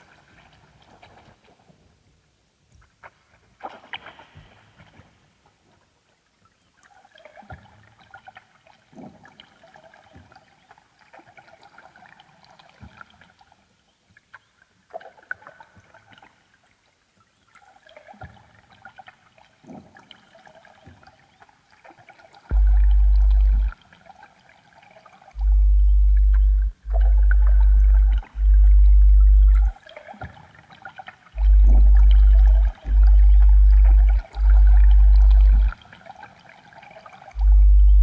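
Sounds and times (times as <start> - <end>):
ambient electronic music: 22.5 - 23.8, 25.4 - 29.8, 31.4 - 35.8, 37.4 - 38.0
soft low thumps: 22.5 - 23.8, 25.4 - 29.8, 31.4 - 35.7, 37.4 - 38.0.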